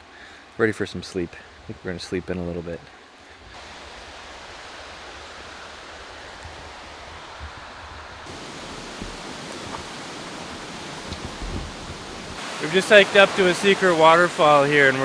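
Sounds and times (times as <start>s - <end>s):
waterfall rushing: 3.6s - 15.0s.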